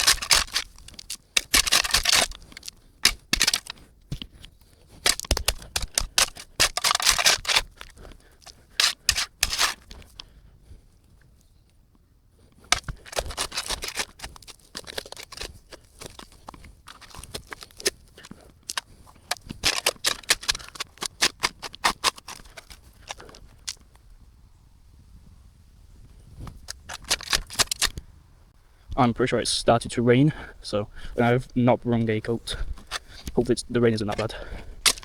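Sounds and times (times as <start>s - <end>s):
shovel digging into dirt: 0.0s - 10.2s, 12.6s - 23.8s, 26.4s - 28.0s, 32.3s - 35.0s.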